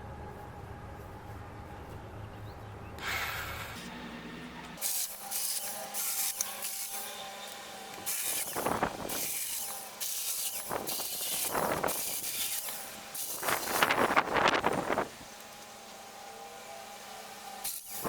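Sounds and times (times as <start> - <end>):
hand saw cutting branch: 4.8 - 16.5, 17.4 - 18.0.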